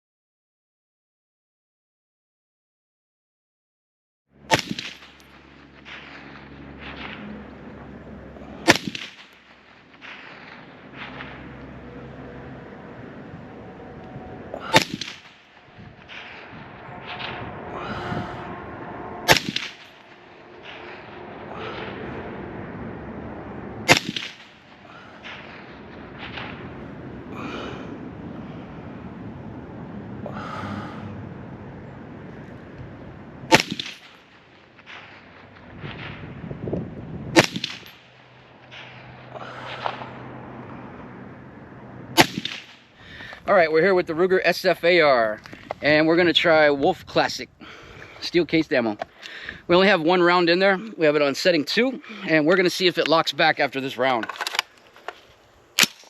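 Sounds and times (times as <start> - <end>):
gunshot with echo: 4.5 - 5.3, 8.6 - 9.4, 14.6 - 18.0, 19.2 - 22.0, 23.8 - 26.7, 33.5 - 34.2, 37.3 - 38.0, 42.2 - 42.8
rifle shot: 4.5 - 7.4, 8.6 - 11.6, 14.6 - 18.0, 19.2 - 22.0, 23.8 - 27.0, 33.5 - 36.3, 37.3 - 40.1, 42.2 - 42.9, 55.8 - 56.0.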